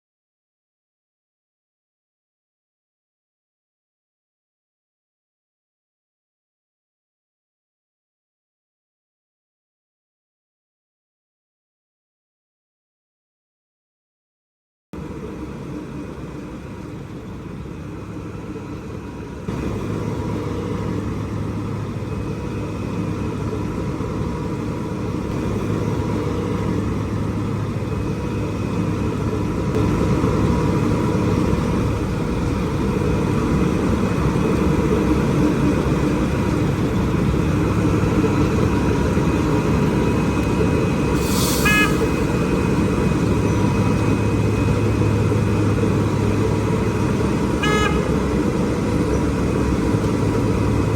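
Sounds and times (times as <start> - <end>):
diesel machinery running: 15.0 - 50.9
high squeal: 41.1 - 42.6.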